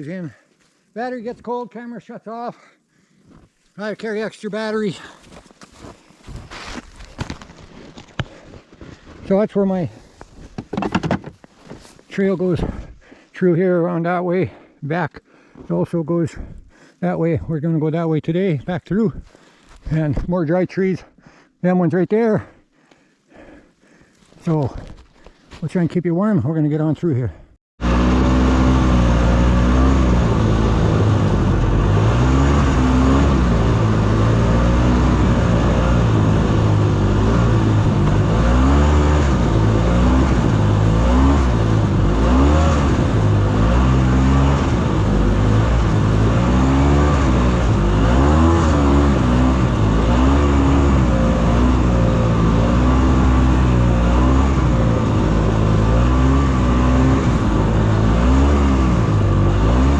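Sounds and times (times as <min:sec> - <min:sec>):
snowmobile engine running: 0:27.8 - 0:59.9.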